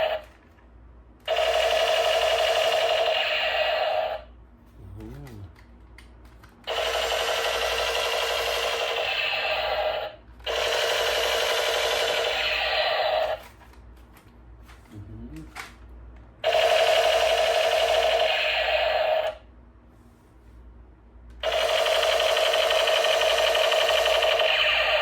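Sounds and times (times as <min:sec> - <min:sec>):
toy gun electronic pulsing burst: 0:00.0 - 0:00.3, 0:01.3 - 0:04.3, 0:06.7 - 0:13.5, 0:16.4 - 0:19.4, 0:21.4 - 0:25.0.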